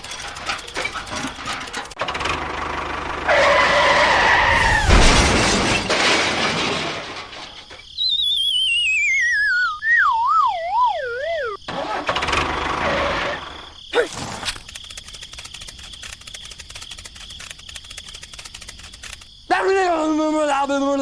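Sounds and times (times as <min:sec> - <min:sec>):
descending slide whistle: 0:08.0 - 0:11.6
cartoon crash: 0:14.0 - 0:14.7.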